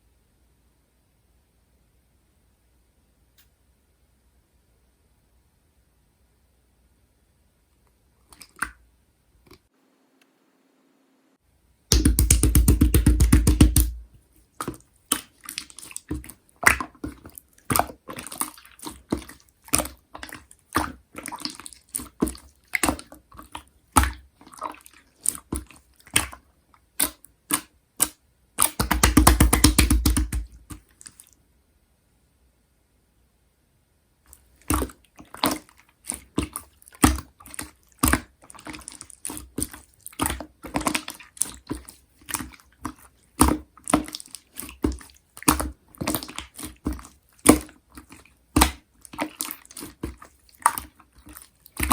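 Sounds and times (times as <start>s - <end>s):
slime squishing and popping: 11.9s - 26.4s, 27.0s - 31.0s, 34.6s - 51.9s.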